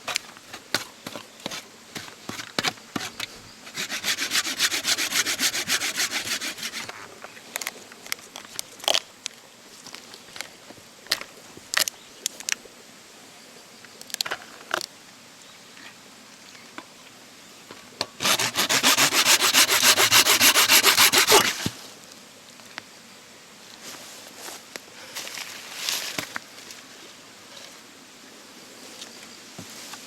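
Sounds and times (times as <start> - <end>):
wood scraping: 0.0 - 7.0, 18.2 - 21.8.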